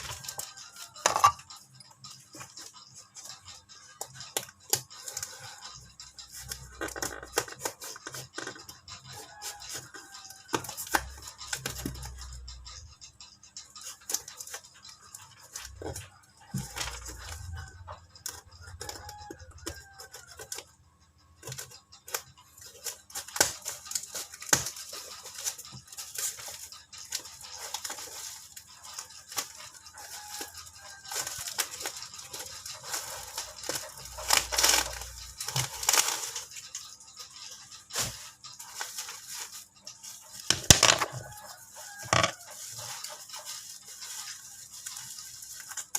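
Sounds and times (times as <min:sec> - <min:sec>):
scattered clicks: 0:00.0 - 0:45.9
packaging tearing and crackling: 0:29.4 - 0:31.9.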